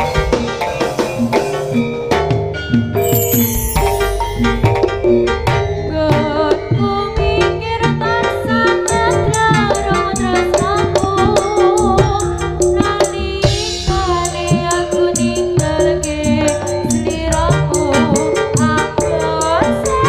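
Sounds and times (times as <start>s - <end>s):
gamelan music: 0.0s - 9.2s.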